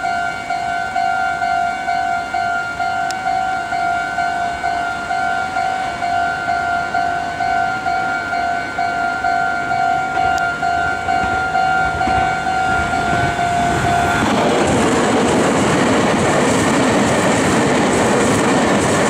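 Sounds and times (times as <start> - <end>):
level crossing bell: 0.0 - 14.3
train rumble: 0.0 - 19.0.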